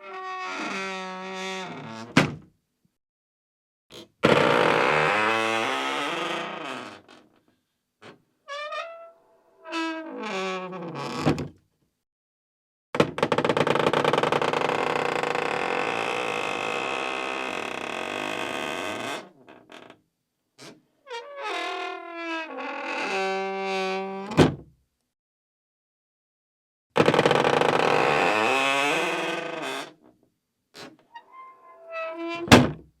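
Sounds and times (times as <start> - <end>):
wooden door hinge creaking: 0.0 - 2.4, 4.0 - 7.2, 8.0 - 11.6, 13.0 - 20.0, 20.6 - 24.6, 27.0 - 30.0, 30.8 - 32.9.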